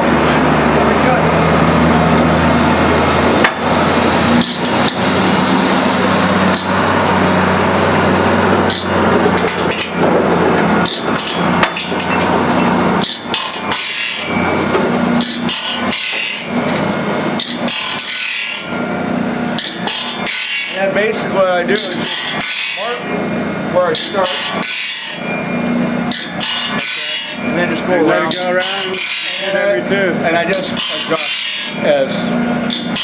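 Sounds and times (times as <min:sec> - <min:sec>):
low motor hum: 0:00.0 - 0:29.0
grinding stone rasping saw teeth: 0:03.2 - 0:18.8, 0:19.5 - 0:33.0
sharp ticks of saw teeth: 0:23.9 - 0:25.3, 0:26.1 - 0:27.4, 0:28.3 - 0:29.5.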